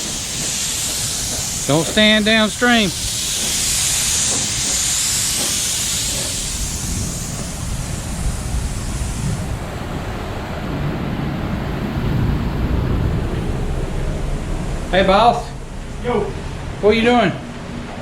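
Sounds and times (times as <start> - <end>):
pressurized jet hissing: 0.0 - 9.8.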